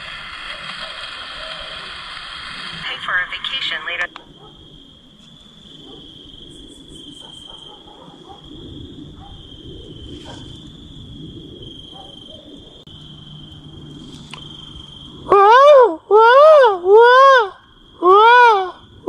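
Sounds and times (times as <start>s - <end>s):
radio static: 0.0s - 4.2s
insect chorus: 0.0s - 19.0s.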